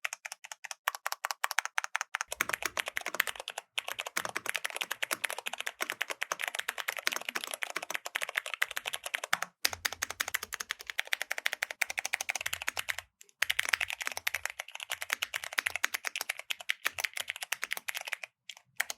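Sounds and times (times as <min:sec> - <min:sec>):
typing on mechanical keyboard: 0:00.0 - 0:18.9.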